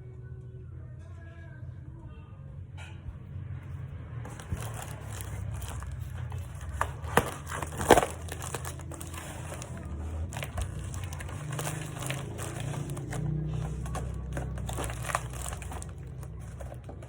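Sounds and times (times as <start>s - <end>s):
packaging crinkling and tearing: 4.3s - 17.0s.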